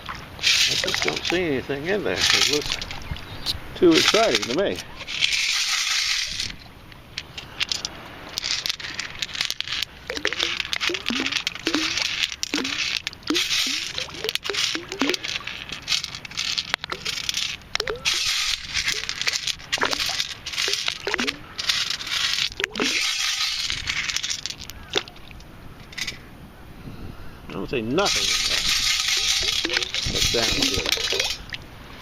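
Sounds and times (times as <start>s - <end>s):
sand and shells rattling in scoop: 0.4s - 3.1s, 3.8s - 26.2s, 28.0s - 31.6s
water hiss: 9.9s - 16.1s.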